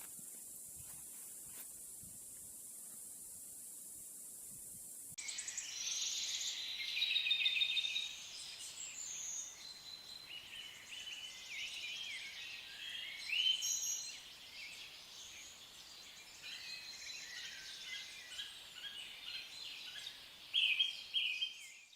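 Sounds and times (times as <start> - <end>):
birds singing: 5.2 - 21.9.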